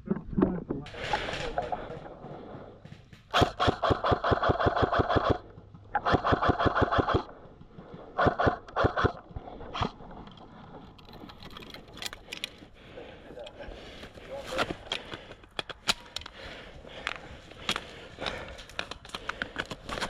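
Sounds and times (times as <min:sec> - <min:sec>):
airsoft rifle firing: 0:03.3 - 0:07.3.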